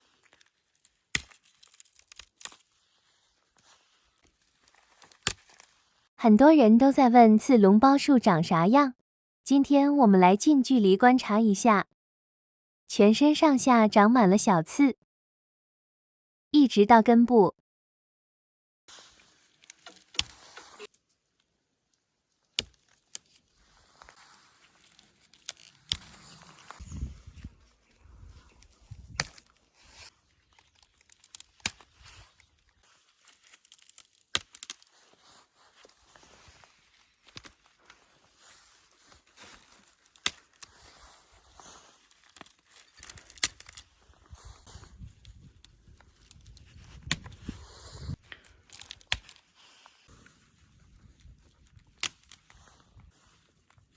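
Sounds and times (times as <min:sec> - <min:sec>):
brush rustling: 0:00.0 - 0:06.1, 0:18.9 - 0:53.9
twigs snapping: 0:00.2 - 0:02.8, 0:03.6 - 0:05.8, 0:19.5 - 0:26.8, 0:28.4 - 0:35.2, 0:36.9 - 0:44.2, 0:45.1 - 0:47.5, 0:48.2 - 0:49.5, 0:51.0 - 0:52.6.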